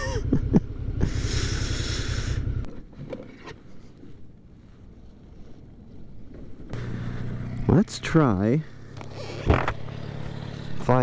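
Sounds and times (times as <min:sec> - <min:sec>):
motorcycle engine running: 0:00.0 - 0:02.7, 0:06.8 - 0:11.0
faint outdoor background: 0:00.0 - 0:11.0.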